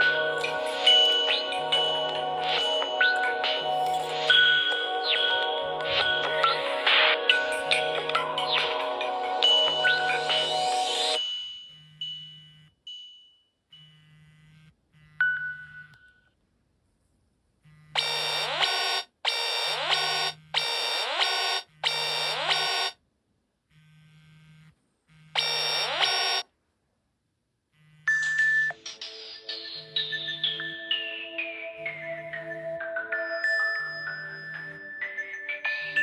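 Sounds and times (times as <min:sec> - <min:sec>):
electronic chime: 0:00.0 - 0:05.4, 0:18.0 - 0:23.0, 0:25.4 - 0:26.4
mellow alarm tone: 0:09.6 - 0:12.8, 0:13.7 - 0:16.3, 0:17.7 - 0:23.0, 0:23.8 - 0:26.5, 0:27.8 - 0:28.8
buzzy electronic alarm beeps: 0:09.8 - 0:12.7, 0:13.8 - 0:16.0, 0:17.7 - 0:23.0, 0:23.8 - 0:26.5, 0:27.8 - 0:28.8.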